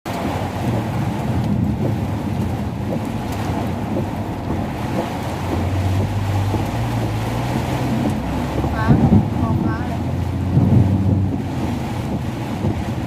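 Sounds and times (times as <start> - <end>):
car engine hum: 0.1 - 13.0
heavy rain on a car: 0.1 - 13.0
strong wind: 0.1 - 13.0.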